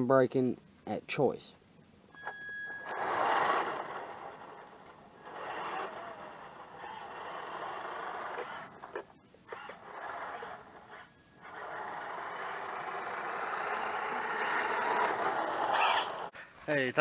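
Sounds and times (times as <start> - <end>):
electric motor whirring: 2.8 - 16.3.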